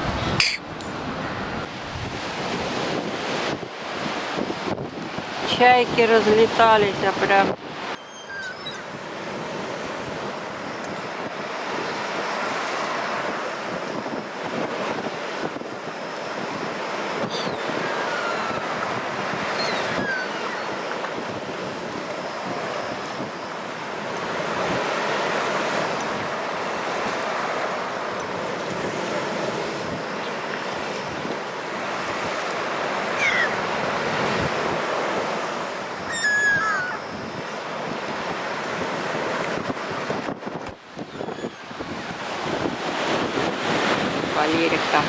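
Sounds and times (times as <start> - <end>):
wind buffeting microphone: 0.0 - 8.0, 33.0 - 45.0
high bird calls: 0.4 - 1.0, 7.9 - 8.9, 17.2 - 18.8, 19.5 - 20.9, 33.1 - 33.8, 36.0 - 37.6, 41.1 - 41.7
surf breaking on shore: 9.0 - 45.0.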